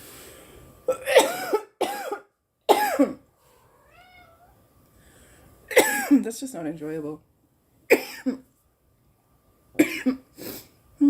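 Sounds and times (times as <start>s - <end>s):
woman coughing harshly: 0.9s - 3.2s, 5.7s - 6.2s, 7.9s - 8.4s, 9.8s - 10.2s.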